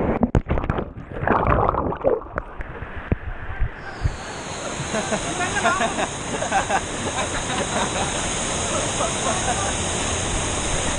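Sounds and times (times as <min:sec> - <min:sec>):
water rushing and splashing: 0:04.0 - 0:10.9.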